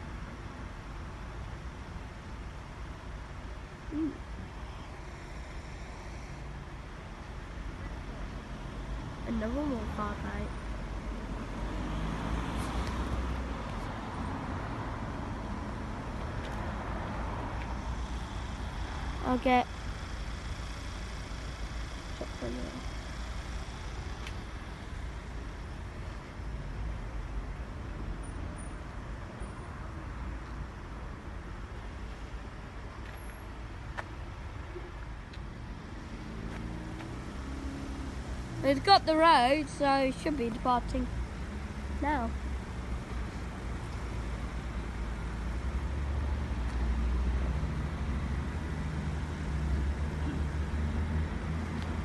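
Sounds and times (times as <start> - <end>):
diesel engines idling: 0.0 - 11.6, 13.3 - 28.2, 38.1 - 52.0.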